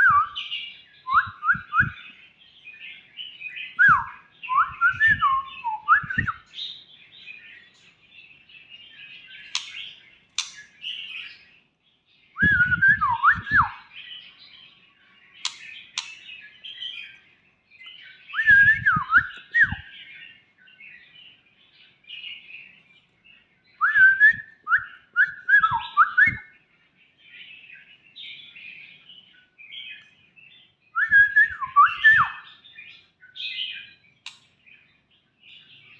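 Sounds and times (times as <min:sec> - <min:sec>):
bird twittering and chirps: 0:00.0 - 0:35.9
bird whistling phrases: 0:12.4 - 0:13.9, 0:23.8 - 0:26.5, 0:31.0 - 0:32.5.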